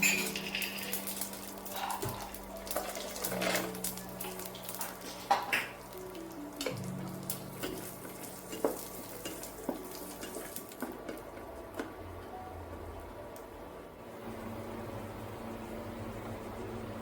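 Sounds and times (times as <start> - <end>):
food frying in a pan: 0.0 - 12.1.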